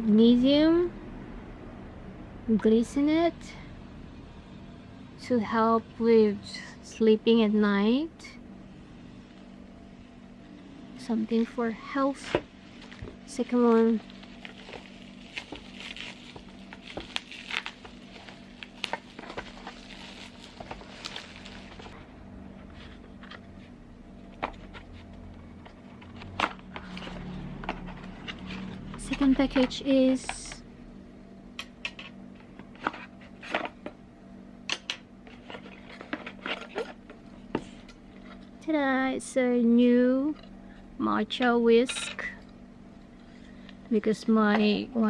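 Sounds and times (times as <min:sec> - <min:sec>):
steady low hum: 0:00.0 - 0:45.0
packaging crinkling and tearing: 0:12.7 - 0:22.0.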